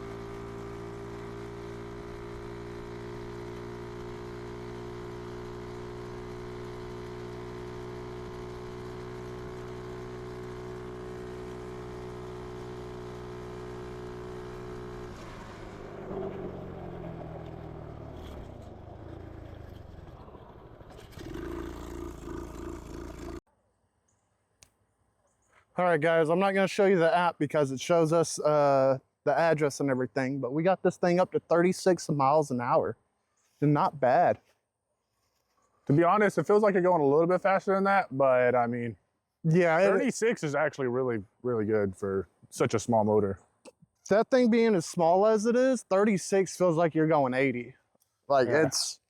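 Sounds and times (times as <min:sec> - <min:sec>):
small engine running at high speed: 0:00.0 - 0:23.4.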